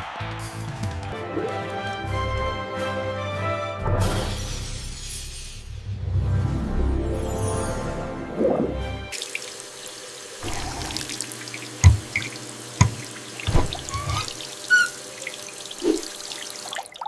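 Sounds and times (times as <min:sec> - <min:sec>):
music: 0:00.0 - 0:09.2
tap water running: 0:08.6 - 0:17.0
drips into basin: 0:10.4 - 0:17.0.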